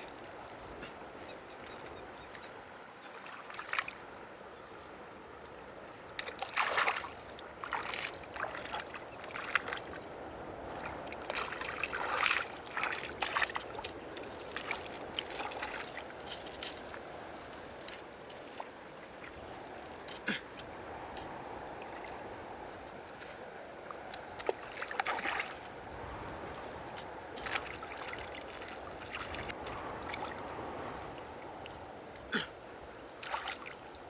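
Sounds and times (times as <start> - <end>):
river water splashing: 0.0 - 34.0
water trickling: 6.0 - 34.0.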